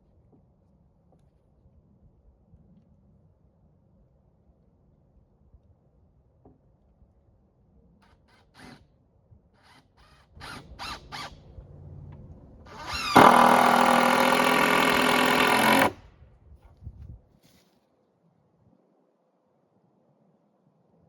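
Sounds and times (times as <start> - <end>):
power drill driving screw into wood: 8.0 - 8.8, 9.6 - 11.4, 12.7 - 16.0.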